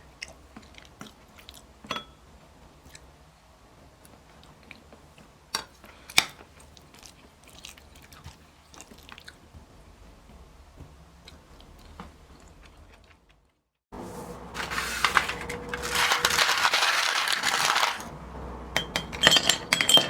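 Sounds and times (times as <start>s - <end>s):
soft chewing: 0.1s - 1.7s, 4.3s - 9.6s, 11.2s - 13.6s.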